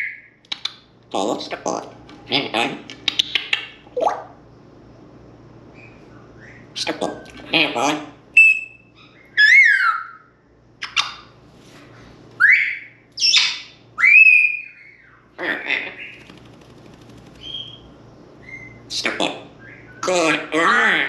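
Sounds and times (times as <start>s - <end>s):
harsh parrot calls: 5.8s - 11.3s, 12.4s - 16.3s
parrot whistling: 8.4s - 10.3s, 12.4s - 15.2s, 17.4s - 18.8s.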